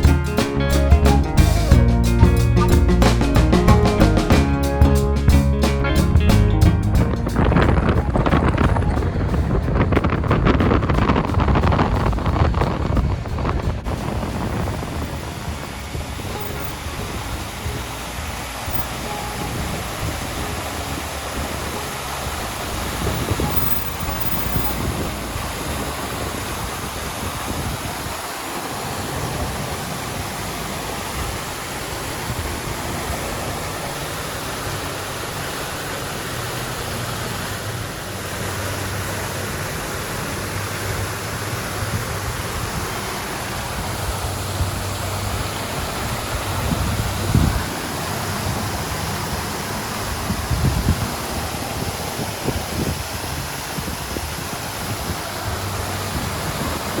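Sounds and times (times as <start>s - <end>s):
low thumps: 0.0s - 12.2s
water fountain splashing: 7.2s - 57.0s.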